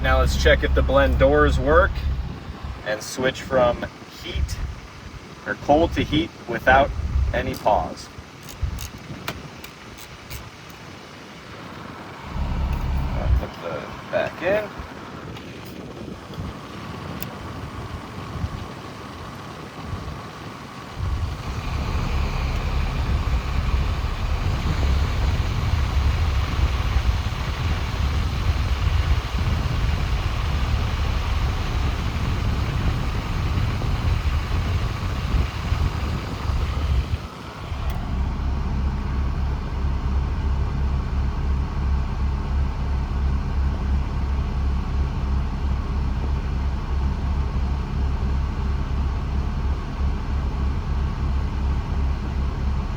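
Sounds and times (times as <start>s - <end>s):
air rushing from vents: 21.0s - 39.5s.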